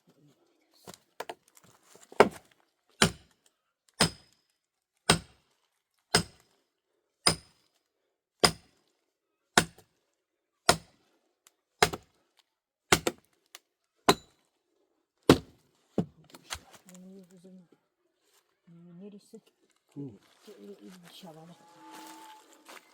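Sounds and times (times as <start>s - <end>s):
hand tool striking metal: 6.2s - 6.4s.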